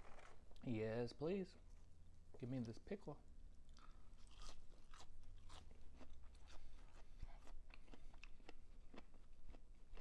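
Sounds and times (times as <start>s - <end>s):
crunchy chewing: 3.7s - 10.0s.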